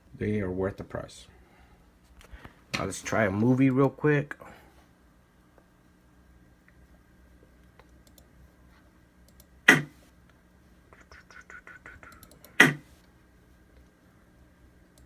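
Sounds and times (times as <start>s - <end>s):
loud key click: 9.7s - 9.9s, 12.6s - 12.8s.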